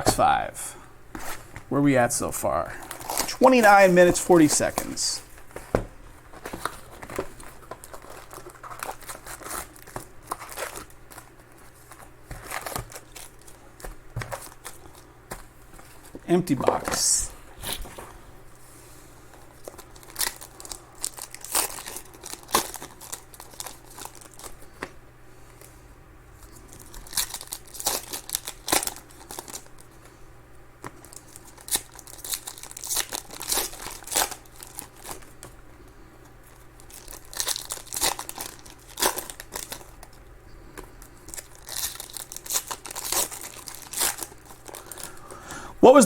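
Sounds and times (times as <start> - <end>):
wrappers tearing and crinkling: 2.7 - 5.4, 6.4 - 15.0, 19.5 - 24.6, 26.6 - 29.9, 31.0 - 35.5, 36.4 - 40.2, 41.1 - 45.3.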